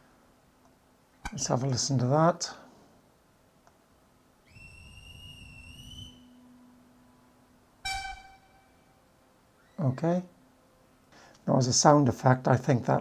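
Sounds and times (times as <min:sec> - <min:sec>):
platform whistle blown: 0:04.4 - 0:06.5, 0:07.8 - 0:09.0
short high-pitched call: 0:04.5 - 0:06.4, 0:07.8 - 0:09.0
faint steam locomotive whistle: 0:07.8 - 0:09.0.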